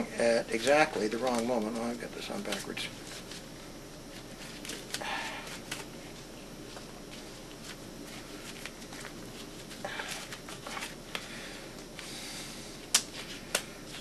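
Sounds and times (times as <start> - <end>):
gloves rustling: 0.4 - 14.0
glove snap: 12.9 - 13.7.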